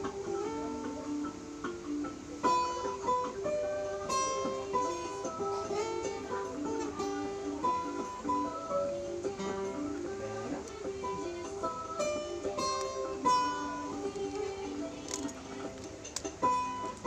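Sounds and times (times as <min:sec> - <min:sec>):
acoustic guitar melody: 0:00.0 - 0:17.0.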